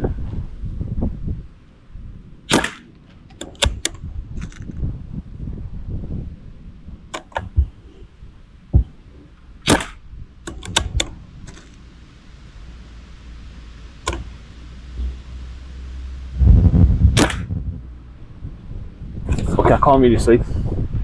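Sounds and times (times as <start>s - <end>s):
airgun shot crack: 2.5s - 2.9s, 9.7s - 10.0s, 16.6s - 17.8s.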